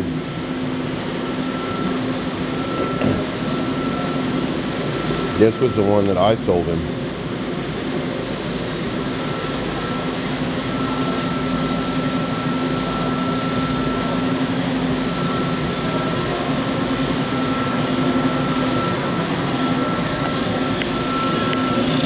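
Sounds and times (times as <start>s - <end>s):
mechanical hum: 0.0s - 22.0s
thin steady whine: 0.0s - 22.0s.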